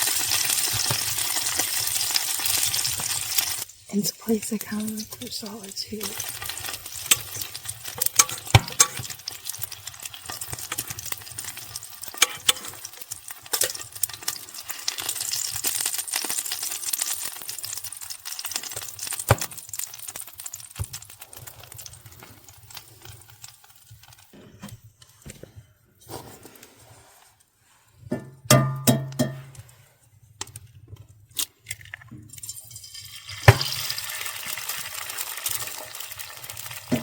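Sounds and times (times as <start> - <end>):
sausages sizzling: 0.0 - 24.4, 32.3 - 37.0.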